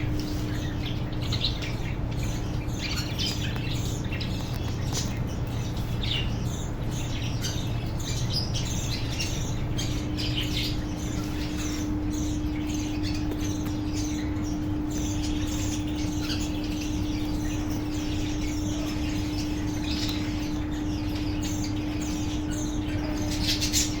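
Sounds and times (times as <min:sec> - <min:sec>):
budgies chirping and squawking: 0:00.0 - 0:24.0
steady low hum: 0:00.0 - 0:24.0.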